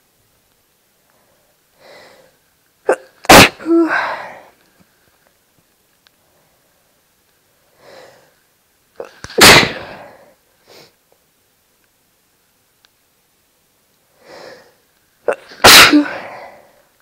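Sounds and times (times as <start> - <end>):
soft breath: 1.0 - 2.4, 3.7 - 4.8, 6.2 - 8.5, 14.1 - 14.9, 16.0 - 17.0
person sneezing: 2.9 - 4.5, 15.3 - 16.6.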